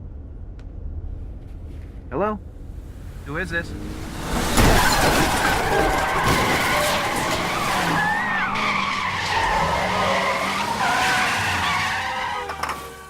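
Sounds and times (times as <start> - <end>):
car engines running: 0.6 - 13.0
tyres screeching in a skid: 3.7 - 13.0.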